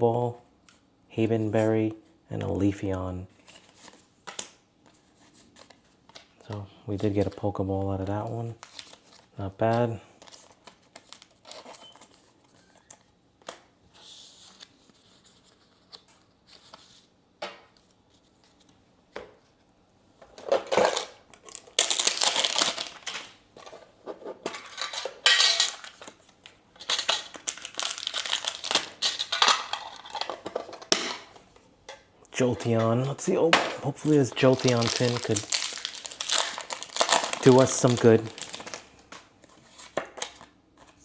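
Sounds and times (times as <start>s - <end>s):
tin clattering and rustling: 24.1s - 26.0s, 29.0s - 31.2s.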